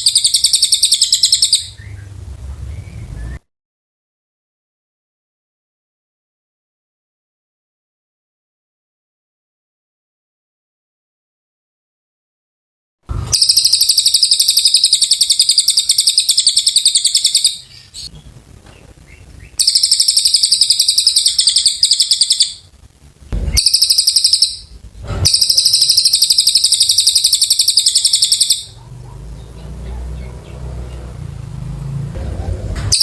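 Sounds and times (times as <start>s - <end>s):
bird chattering song: 0.0s - 3.4s, 13.1s - 22.7s, 23.4s - 33.0s.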